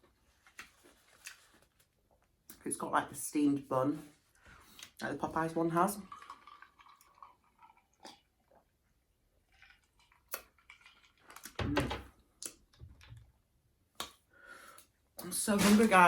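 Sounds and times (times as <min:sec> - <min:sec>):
chewing crispy food: 0:00.4 - 0:02.6, 0:06.1 - 0:08.6, 0:09.5 - 0:11.6.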